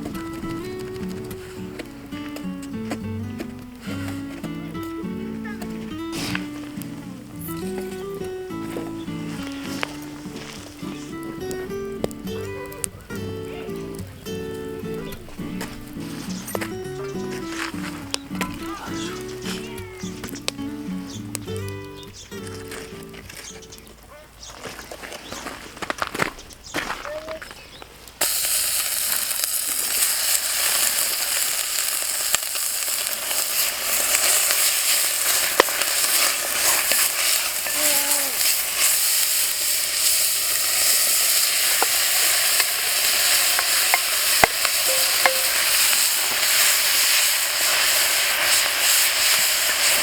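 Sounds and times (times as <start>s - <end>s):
food sizzling in hot oil: 0.0s - 2.1s, 5.9s - 12.5s, 28.2s - 50.0s
oil popping and crackling: 0.0s - 50.0s.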